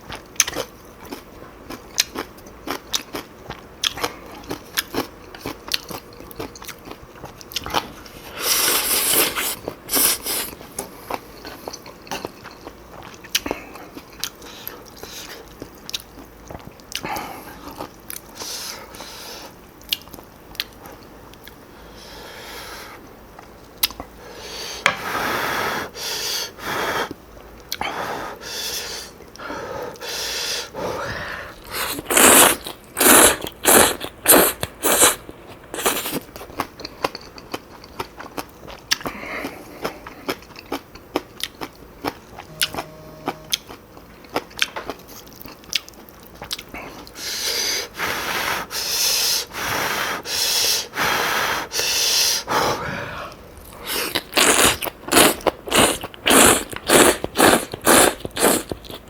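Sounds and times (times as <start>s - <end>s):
chewing: 0.1s - 18.7s, 31.7s - 42.5s, 43.5s - 47.2s, 53.7s - 59.0s
loud bites and slurps: 53.8s - 58.8s.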